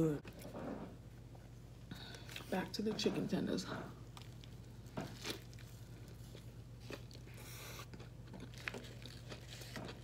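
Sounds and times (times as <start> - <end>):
chewing and biting sandwich: 4.0 - 10.0.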